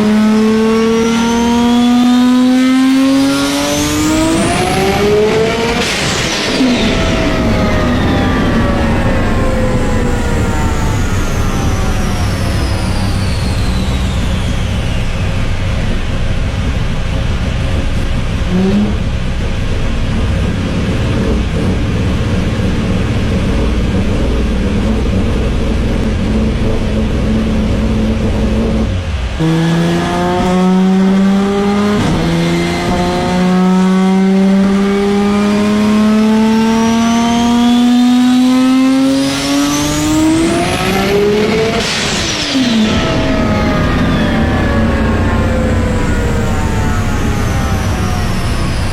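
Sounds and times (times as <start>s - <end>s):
car engine accelerating: 0.0s - 48.9s
car passing by: 0.0s - 48.9s
road and wind noise: 0.0s - 48.9s
turbo whistle: 3.7s - 16.2s.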